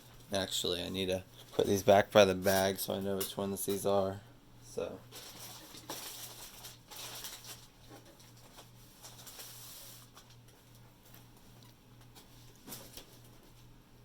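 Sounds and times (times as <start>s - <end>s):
steady low hum: 0.0s - 14.0s
plastic packaging rustling: 5.1s - 11.4s.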